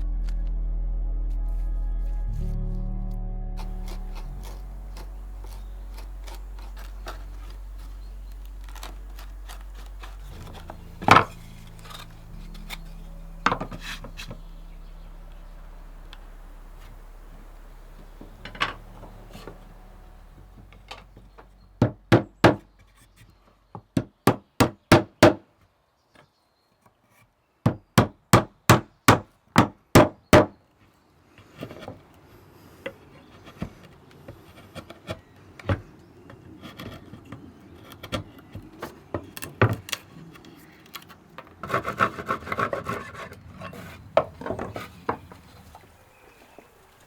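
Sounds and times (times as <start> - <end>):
wood scraping and rubbing: 3.6 - 23.4, 40.2 - 47.0.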